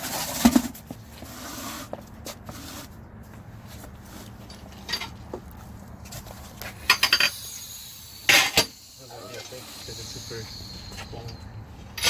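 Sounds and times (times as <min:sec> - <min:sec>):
metal tools clinking: 0:04.4 - 0:05.2, 0:06.8 - 0:11.4
sharp metallic hits: 0:06.8 - 0:12.0.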